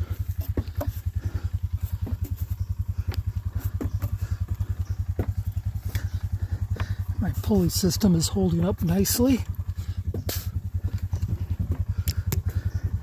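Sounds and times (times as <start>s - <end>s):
small engine idling: 0.0s - 13.0s
light clicks and knocks: 0.3s - 7.2s.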